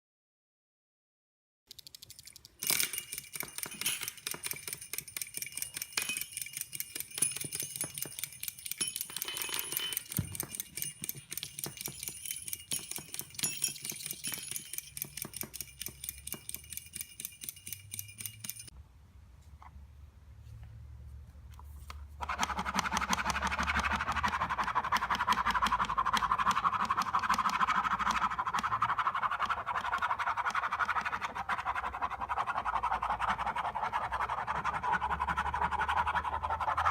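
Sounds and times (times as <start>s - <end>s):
rapid mechanical clicking: 1.7s - 18.7s
faint high ringing: 2.6s - 18.7s.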